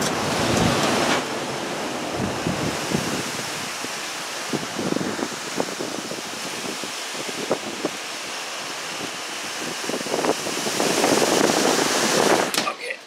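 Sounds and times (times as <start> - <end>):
strong wind rushing through window: 0.0 - 12.9.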